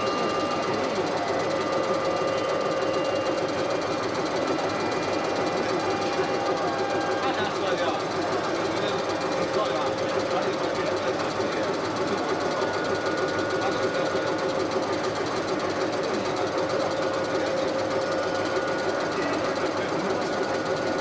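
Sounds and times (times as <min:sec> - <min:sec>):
constant machine whine: 0:00.0 - 0:21.0
lathe cutting with rough chatter: 0:00.0 - 0:21.0.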